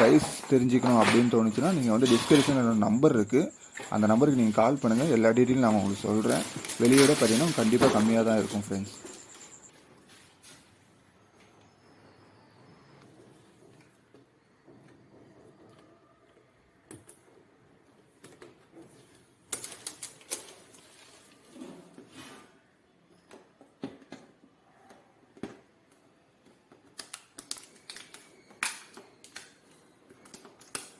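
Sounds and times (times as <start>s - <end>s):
packaging being handled: 0.0s - 9.7s.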